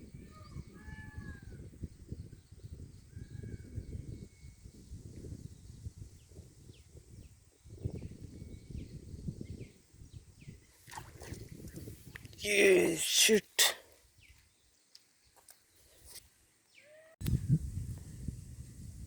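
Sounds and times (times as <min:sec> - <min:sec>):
low rumbling microphone noise: 0:17.2 - 0:19.0.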